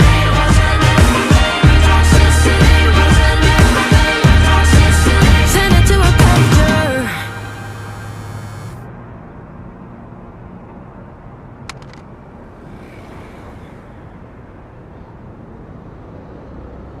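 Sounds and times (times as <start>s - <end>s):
quick clicks: 11.6s - 12.2s.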